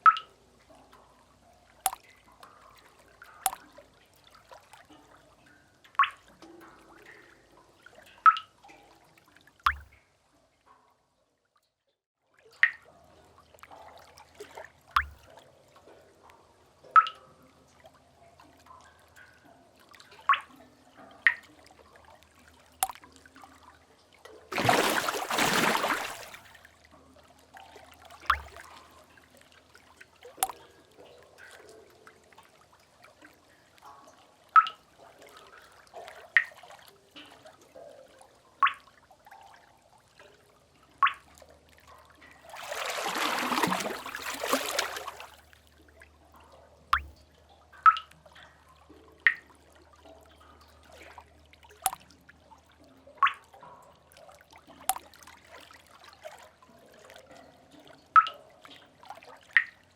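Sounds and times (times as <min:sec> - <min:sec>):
water drops plinking into water: 0:00.0 - 0:10.1, 0:12.5 - 0:32.6, 0:33.2 - 0:39.6, 0:40.9 - 0:45.6, 0:46.3 - 0:56.4, 0:57.0 - 0:59.9
water splash rushing in: 0:24.5 - 0:26.5, 0:42.6 - 0:45.4.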